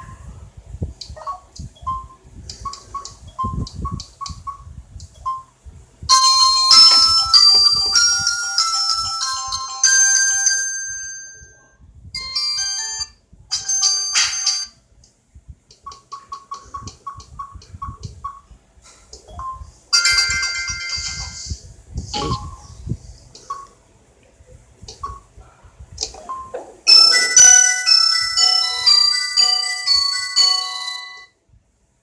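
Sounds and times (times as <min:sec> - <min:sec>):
electronic ringtone melody: 0:06.1 - 0:11.5, 0:12.2 - 0:14.7, 0:19.4 - 0:21.4, 0:26.3 - 0:31.4.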